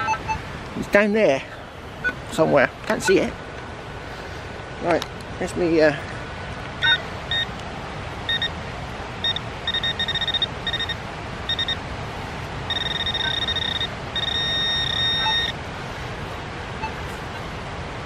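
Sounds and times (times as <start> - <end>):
metal detector beeping: 0.0 - 0.4, 6.8 - 7.5, 8.3 - 8.6, 9.2 - 11.8, 12.7 - 15.6, 16.8 - 17.0.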